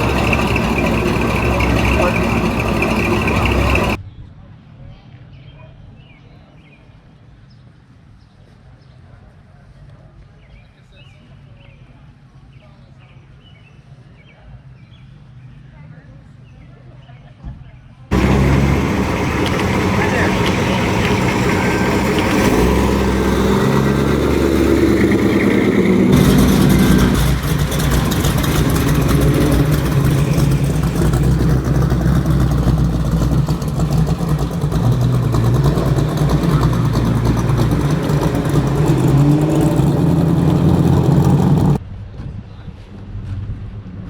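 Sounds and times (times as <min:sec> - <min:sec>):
car engine running loud: 0:00.0 - 0:04.0, 0:18.1 - 0:41.8.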